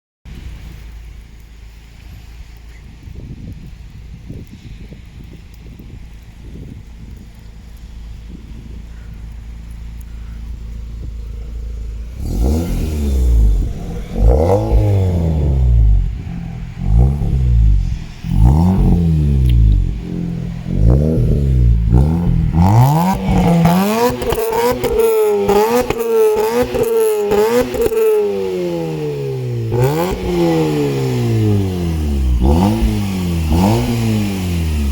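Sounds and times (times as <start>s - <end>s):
rotary engine revving: 10.9s - 34.9s.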